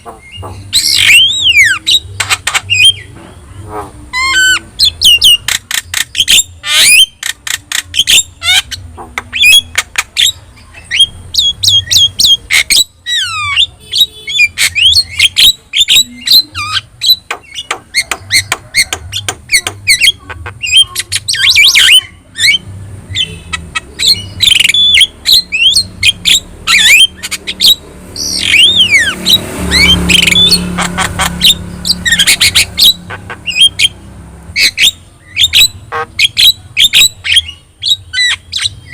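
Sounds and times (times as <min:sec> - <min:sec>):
myna bird squawks and whistles: 0:00.3 - 0:03.1, 0:04.1 - 0:05.6.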